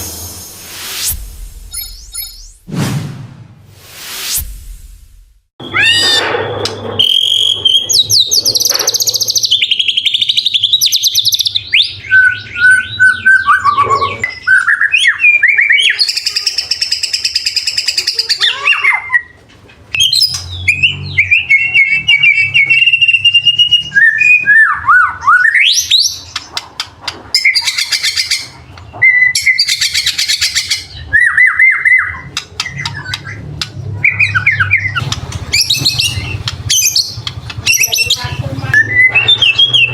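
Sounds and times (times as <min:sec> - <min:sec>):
songbird singing whistled phrases: 0:01.7 - 0:02.5, 0:07.0 - 0:19.4, 0:20.0 - 0:26.4, 0:27.4 - 0:33.4, 0:34.0 - 0:39.9
harsh rattling bird calls: 0:05.6 - 0:22.9, 0:25.2 - 0:39.9.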